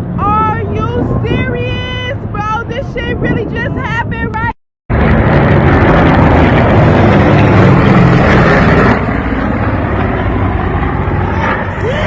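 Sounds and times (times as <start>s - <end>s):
propeller aircraft engines droning: 0.0s - 12.0s
heavy rushing noise: 4.9s - 12.0s.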